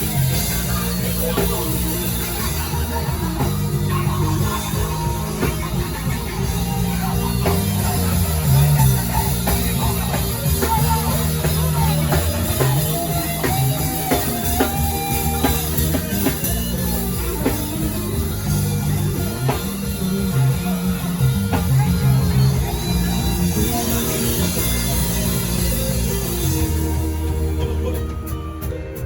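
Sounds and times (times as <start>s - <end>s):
drum kit beat: 0.0s - 29.0s
live band playing instrumental: 0.0s - 29.0s.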